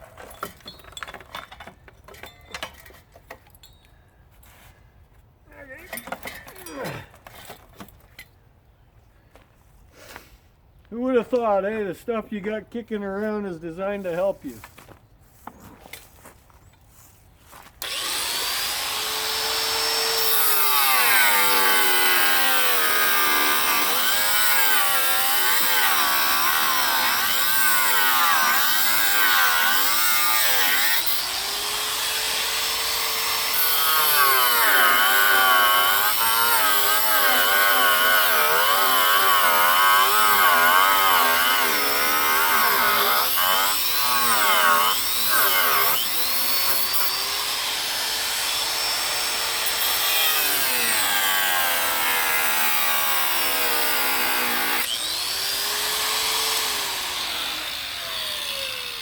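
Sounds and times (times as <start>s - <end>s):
angle grinder cutting metal: 17.8s - 59.0s.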